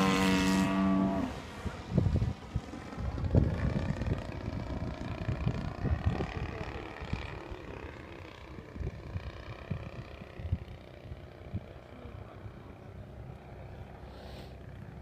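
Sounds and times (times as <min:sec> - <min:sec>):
wind buffeting microphone: 0:00.0 - 0:11.8
model plane engine buzzing: 0:00.0 - 0:15.0.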